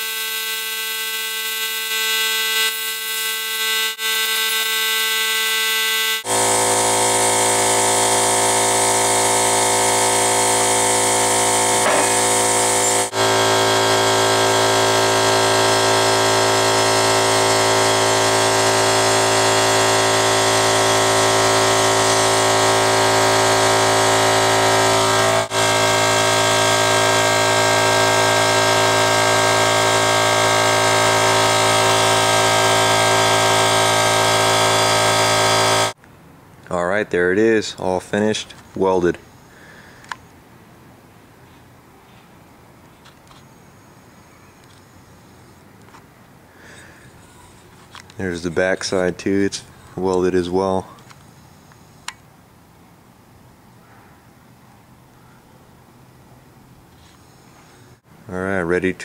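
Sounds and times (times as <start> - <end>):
metalworking machine humming: 0.0 - 36.0.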